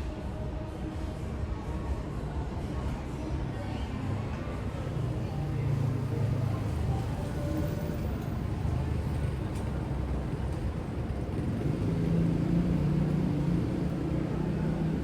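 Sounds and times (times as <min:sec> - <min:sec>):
passing vehicles rumbling: 0:04.1 - 0:15.0.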